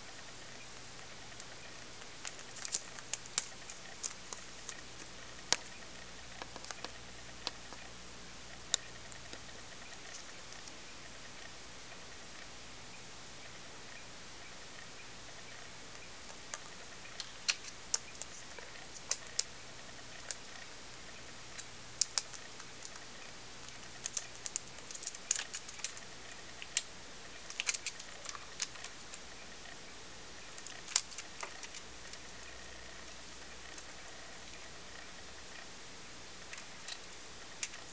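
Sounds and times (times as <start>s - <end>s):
faint steady hum: 0.0s - 37.9s
computer keyboard keys clicking: 24.0s - 26.0s, 27.5s - 28.8s.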